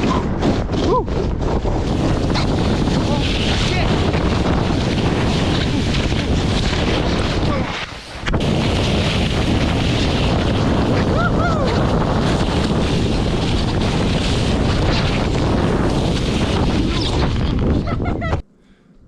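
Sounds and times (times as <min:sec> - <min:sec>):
wind buffeting microphone: 0:00.0 - 0:18.4
person calling out: 0:11.1 - 0:11.8.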